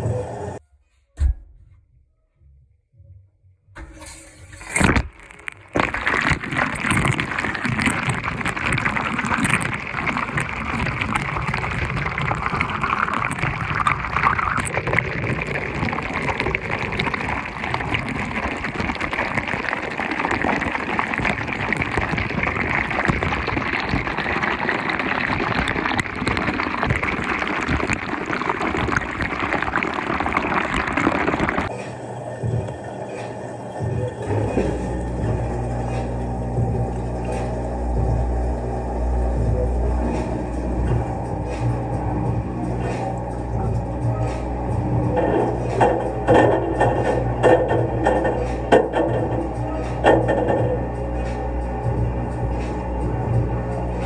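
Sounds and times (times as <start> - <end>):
short knock: 1.2 - 1.8
washing machine water rushing: 3.8 - 54.0.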